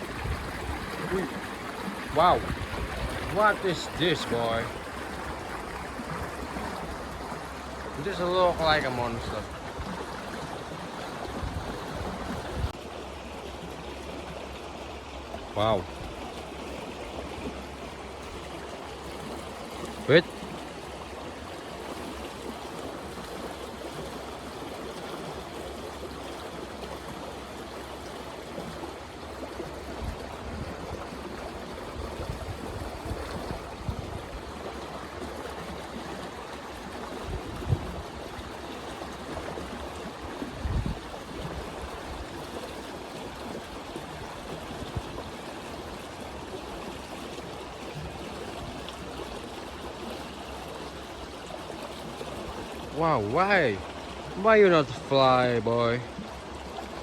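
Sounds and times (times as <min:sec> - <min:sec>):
stream flowing: 0:00.0 - 0:57.0.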